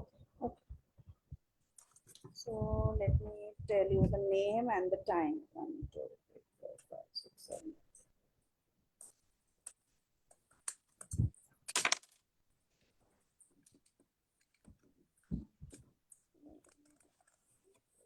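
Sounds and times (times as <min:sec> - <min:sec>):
faint clicks and knocks: 0:00.4 - 0:03.3, 0:13.4 - 0:18.0.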